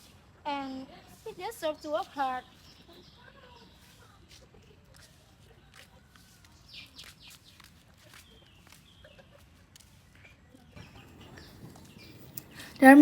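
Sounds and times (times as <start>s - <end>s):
bird calls: 10.8s - 13.0s.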